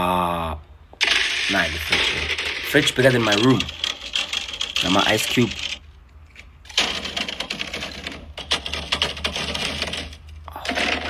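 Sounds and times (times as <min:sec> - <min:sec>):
ice cubes clattering: 0:01.0 - 0:05.8.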